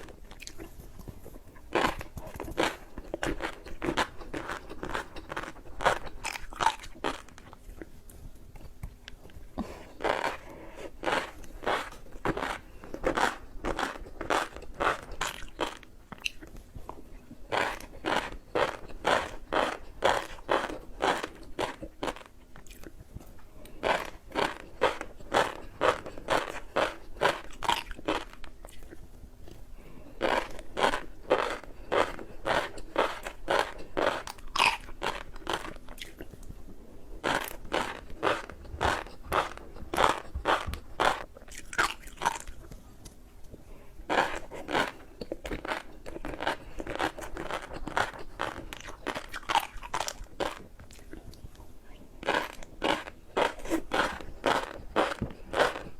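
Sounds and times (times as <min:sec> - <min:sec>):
chewing crunchy snack: 0:00.0 - 0:43.2, 0:44.0 - 0:55.9.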